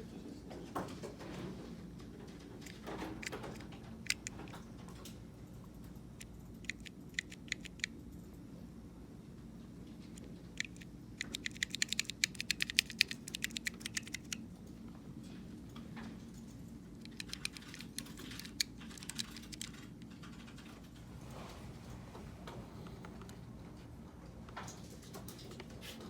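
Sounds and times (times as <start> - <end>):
mechanical keyboard typing: 2.6 - 4.6, 5.9 - 8.0, 10.2 - 14.4, 17.0 - 20.8.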